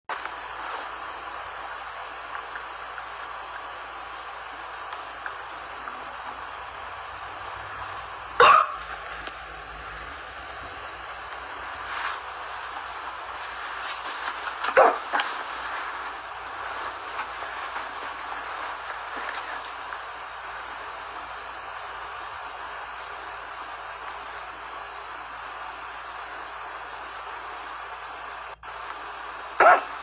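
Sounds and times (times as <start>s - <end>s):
steady hiss: 0.1s - 30.0s
girl hiccuping: 8.4s - 8.9s, 29.6s - 29.9s.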